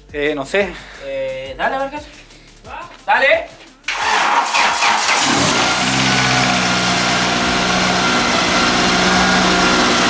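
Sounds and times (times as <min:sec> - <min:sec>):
car engine cranking and idling: 0:03.9 - 0:10.0.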